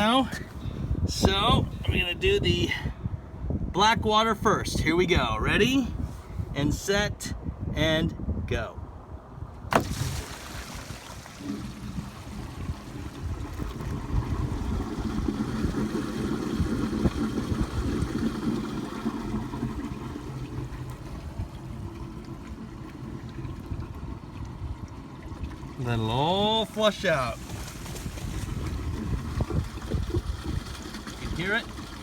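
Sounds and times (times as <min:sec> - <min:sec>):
wastewater rushing and gurgling: 0:09.7 - 0:32.0.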